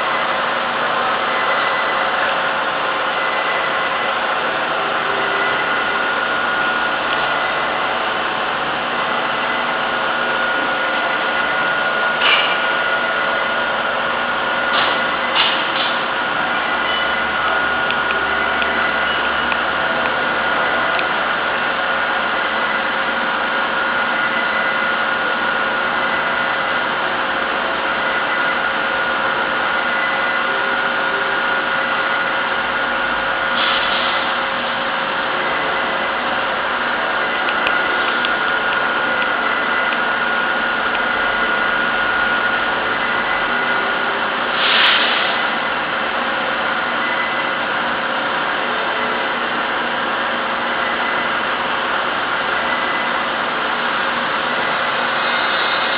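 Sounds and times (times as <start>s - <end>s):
machine running with whine: 0.0s - 55.9s
short hisses: 44.6s - 45.4s.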